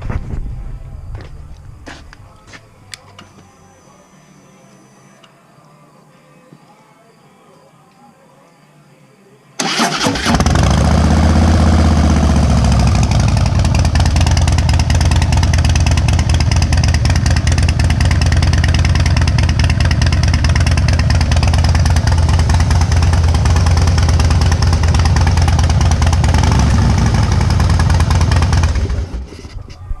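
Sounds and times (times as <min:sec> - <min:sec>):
motorcycle starting and idling: 0:09.6 - 0:29.6.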